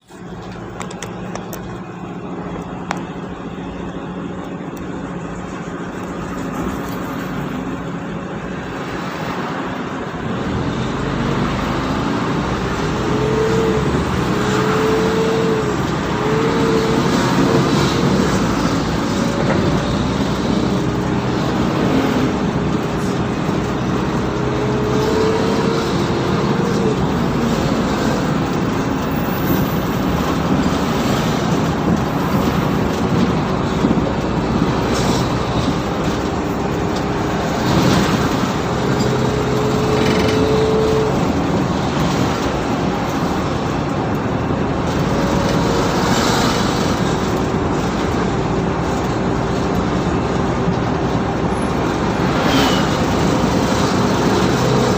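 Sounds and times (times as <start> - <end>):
bus engine drone: 0.0 - 54.9
engine whine: 0.0 - 54.9.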